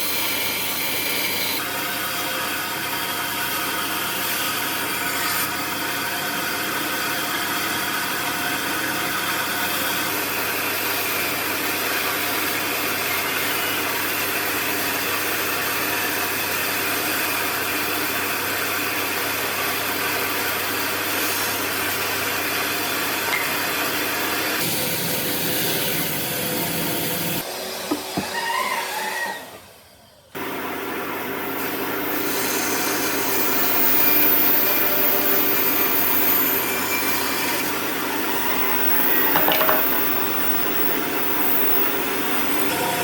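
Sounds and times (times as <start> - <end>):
knocks: 27.9 - 28.4, 39.3 - 40.3
power tool running on wood: 30.4 - 43.0.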